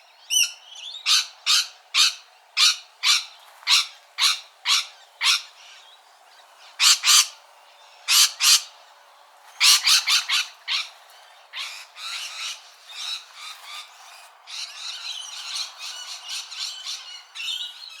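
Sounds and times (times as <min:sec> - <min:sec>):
parrot squawking: 0:00.4 - 0:05.5, 0:06.8 - 0:07.4, 0:08.1 - 0:08.7, 0:09.6 - 0:10.9
parrot rapid chattering calls: 0:06.8 - 0:07.4, 0:08.1 - 0:08.7, 0:09.6 - 0:10.9.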